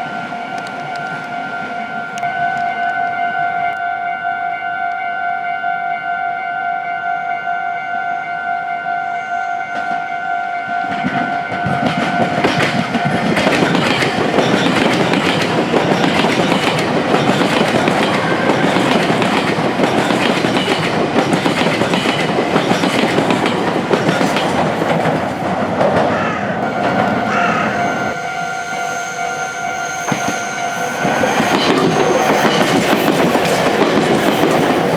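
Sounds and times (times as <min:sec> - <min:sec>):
level crossing alarm ringing: 0:00.0 - 0:25.4, 0:26.6 - 0:34.9
train wheels clattering: 0:10.8 - 0:28.0, 0:29.5 - 0:34.9.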